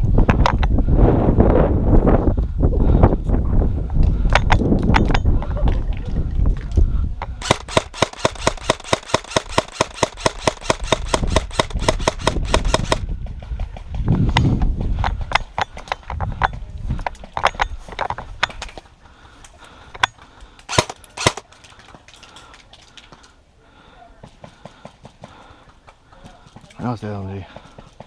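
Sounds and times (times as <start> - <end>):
airsoft machine gun automatic burst: 7.4 - 13.0, 20.7 - 21.4.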